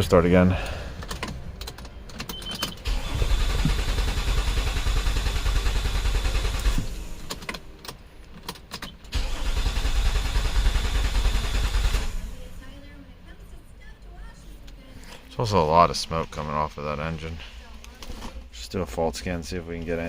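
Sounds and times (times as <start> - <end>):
car engine cranking: 0.0 - 12.6.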